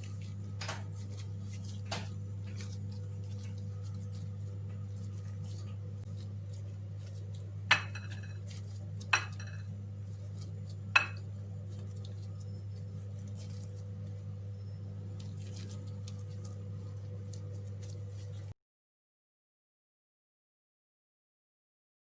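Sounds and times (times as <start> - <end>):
low hum: 0.0 - 18.5
kitchenware clinking: 7.7 - 9.7, 10.9 - 11.2.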